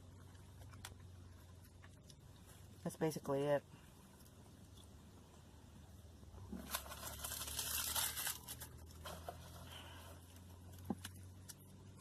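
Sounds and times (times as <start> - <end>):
wrapping crinkling and rustling: 6.5 - 11.7.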